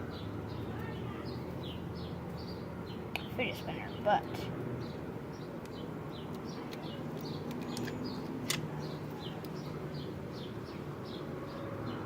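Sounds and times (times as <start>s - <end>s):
bird chirping: 0.1s - 12.0s.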